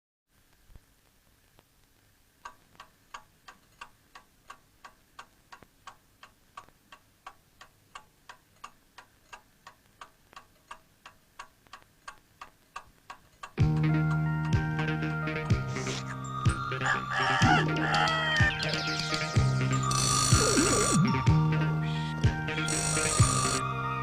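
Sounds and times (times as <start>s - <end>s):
alarm clock ticking: 16.2s - 23.6s.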